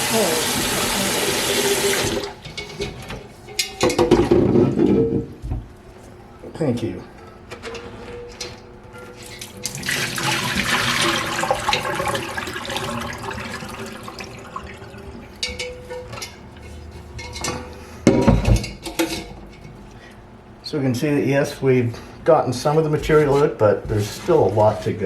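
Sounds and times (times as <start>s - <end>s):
tap water running into sink: 0.0s - 2.4s, 9.6s - 15.2s.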